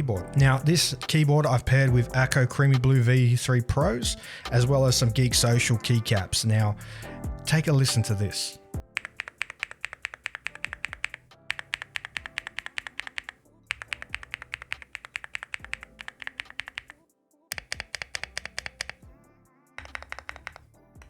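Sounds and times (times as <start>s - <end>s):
quiet background music: 0.0s - 21.0s
mechanical keyboard key clacks: 8.9s - 19.0s, 19.8s - 20.6s.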